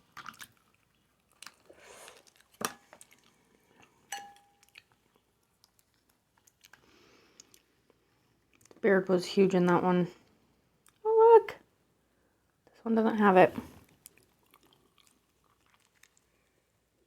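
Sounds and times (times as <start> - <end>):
soft chewing: 0.0 - 8.8, 10.2 - 11.0, 13.5 - 17.0
ringing clink: 4.1 - 4.7.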